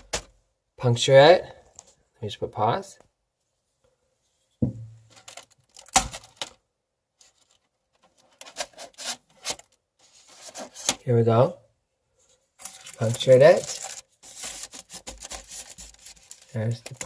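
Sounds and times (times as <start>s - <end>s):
plastic film crackling: 12.6s - 17.0s.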